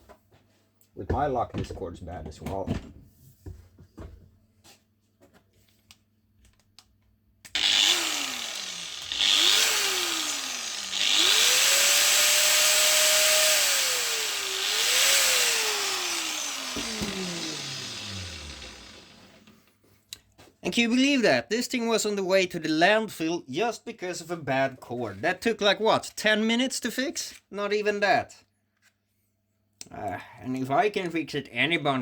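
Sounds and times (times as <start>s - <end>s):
angle grinder motor spinning: 7.5s - 19.6s.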